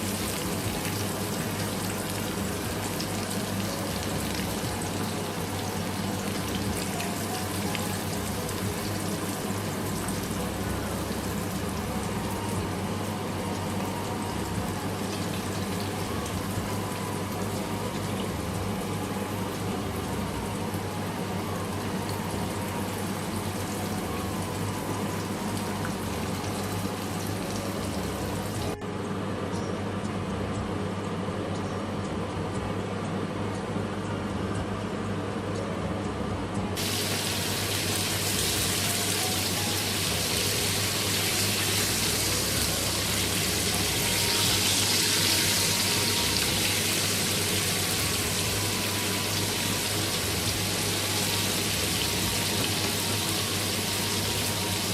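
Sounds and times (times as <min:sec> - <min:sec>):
food deep-frying in oil: 0:00.0 - 0:28.8, 0:36.8 - 0:54.9.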